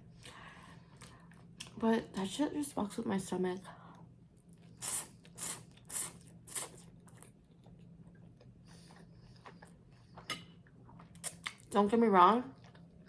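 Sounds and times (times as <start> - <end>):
crunchy chewing: 5.7 - 10.3.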